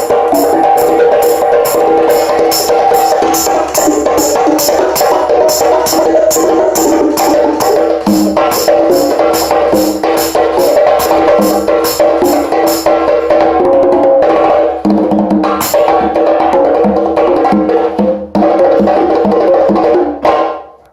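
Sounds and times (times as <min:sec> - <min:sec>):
sustained pitched tones: 0:00.0 - 0:09.4.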